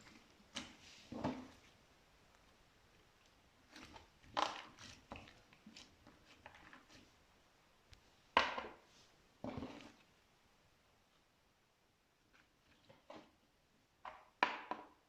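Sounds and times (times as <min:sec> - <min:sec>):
slime squishing: 0:03.0 - 0:07.2.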